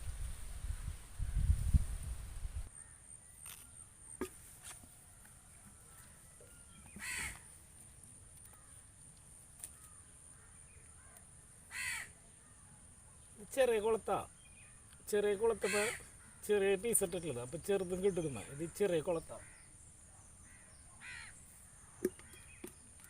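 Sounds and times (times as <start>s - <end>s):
crow cawing: 7.0s - 7.5s, 8.5s - 8.8s, 9.7s - 12.2s, 15.5s - 16.5s, 19.4s - 19.7s, 20.4s - 21.4s.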